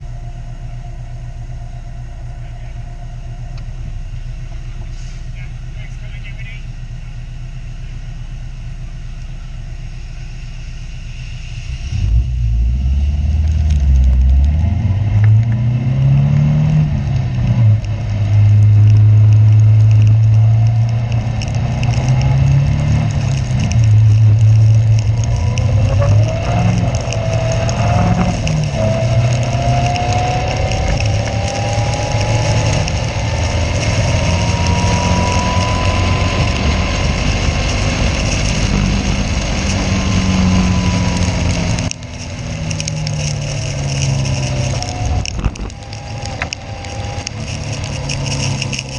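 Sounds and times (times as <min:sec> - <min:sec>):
rising whine: 0:00.0 - 0:48.9
race car engine revving: 0:09.8 - 0:48.9.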